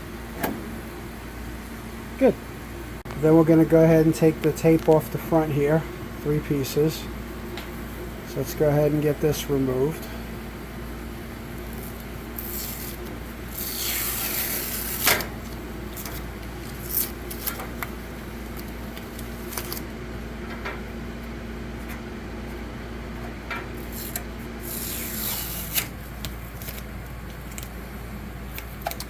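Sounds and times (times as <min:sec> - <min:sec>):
tape peeling with rasping pull: 0:11.7 - 0:17.9, 0:18.5 - 0:19.9, 0:23.8 - 0:27.7.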